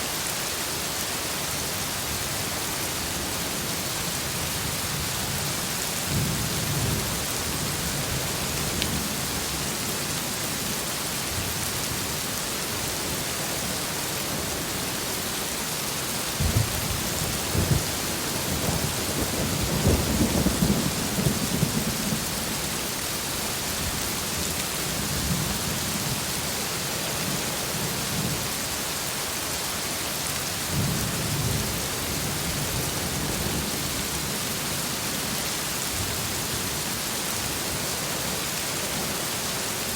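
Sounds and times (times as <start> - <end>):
heavy rain: 0.0 - 39.9
thunder crack and rumble: 16.4 - 22.3.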